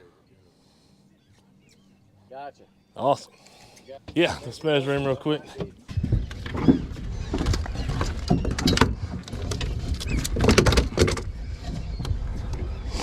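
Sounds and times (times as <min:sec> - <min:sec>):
fish knocking and rattling on board: 0:05.6 - 0:11.3.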